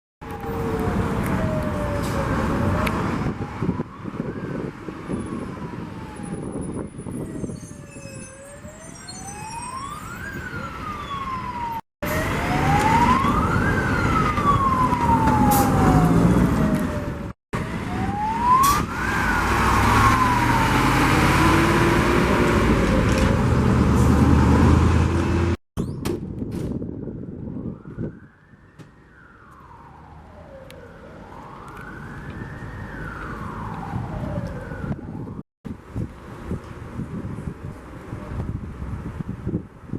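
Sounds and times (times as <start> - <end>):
faint wailing siren: 0.2 - 23.0, 26.9 - 35.4
truck engine and road rumble: 0.2 - 39.9
truck engine: 12.0 - 26.2.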